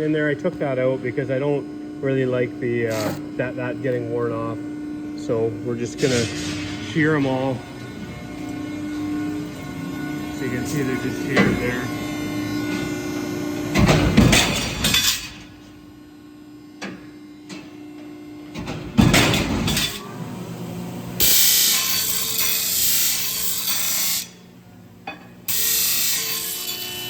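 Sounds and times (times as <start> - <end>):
loud metallic impact: 5.8 - 8.4.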